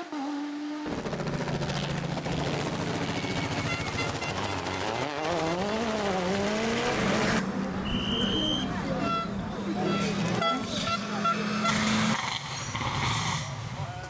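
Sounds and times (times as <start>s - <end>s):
rally car engine: 0.0s - 14.0s.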